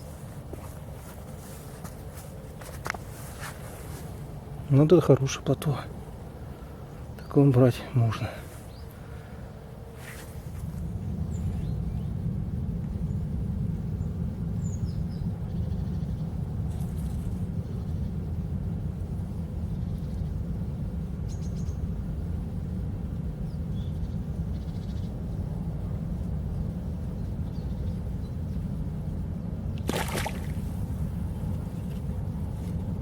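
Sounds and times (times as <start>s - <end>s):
rustling noise: 0.0s - 4.4s, 9.9s - 10.9s, 31.6s - 32.9s
wind rumble on microphone: 0.0s - 33.0s.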